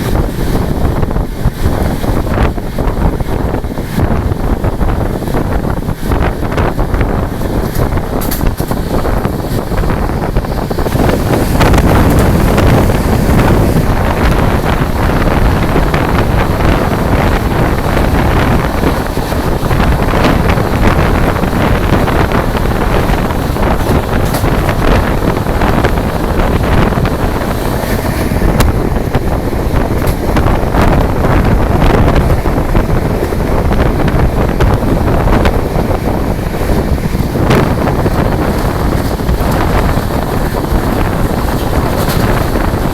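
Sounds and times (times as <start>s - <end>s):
wind and rain rushing: 0.0s - 42.9s
sharp clicks and knocks: 7.4s - 9.7s.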